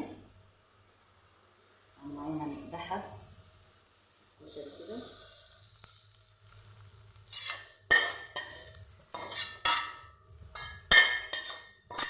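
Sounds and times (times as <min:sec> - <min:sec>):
utensil clanking on metal pot: 0:07.3 - 0:12.0.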